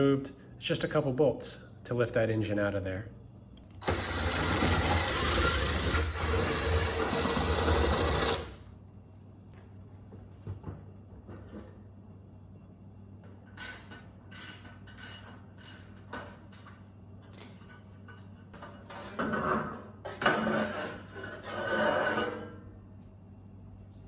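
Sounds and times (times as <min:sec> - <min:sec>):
ratchet wrench clicking: 0:13.6 - 0:16.1.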